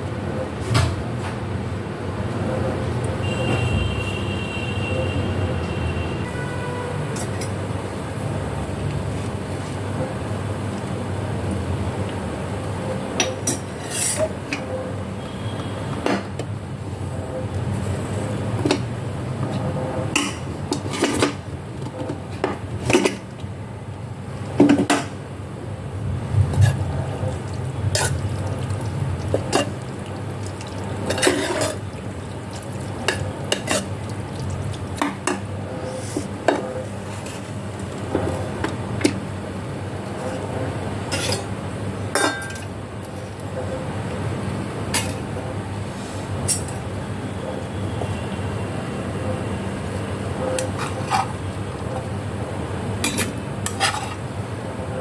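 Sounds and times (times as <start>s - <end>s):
metal utensils clinking and scraping: 13.5s - 14.4s, 26.5s - 36.3s, 41.1s - 41.5s, 50.6s - 52.0s, 53.0s - 54.2s
steady low hum: 25.2s - 41.0s.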